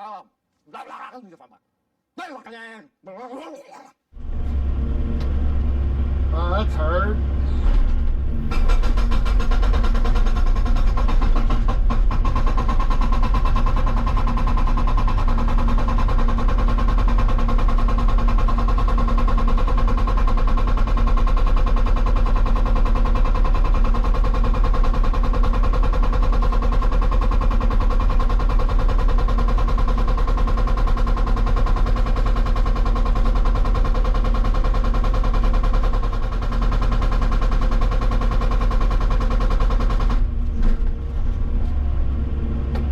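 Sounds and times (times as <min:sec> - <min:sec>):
excavator engine under load: 0:04.2 - 0:42.9
hydraulic breaker hammering rock: 0:08.5 - 0:40.3.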